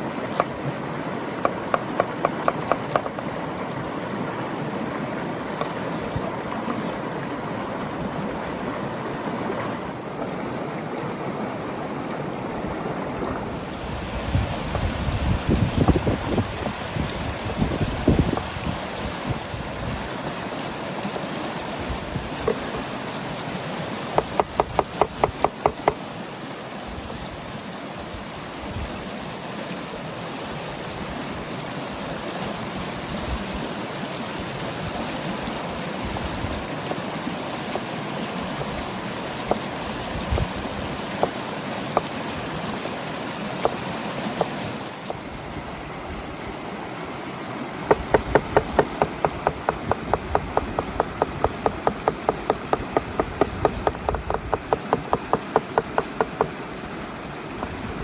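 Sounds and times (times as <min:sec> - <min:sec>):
river water running: 0:00.0 - 0:58.0
quick even knocks: 0:47.9 - 0:56.5.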